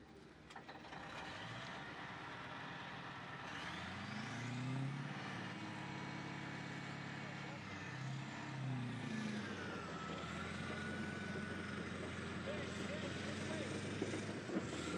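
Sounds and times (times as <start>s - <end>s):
bulldozer diesel engine revving: 0.6s - 14.9s.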